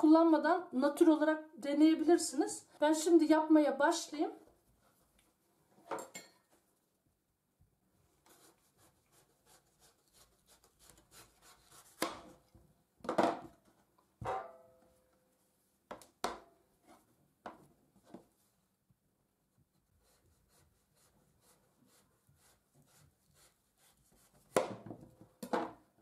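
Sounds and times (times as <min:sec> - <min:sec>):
knife cutting radish on board: 0:08.3 - 0:12.4.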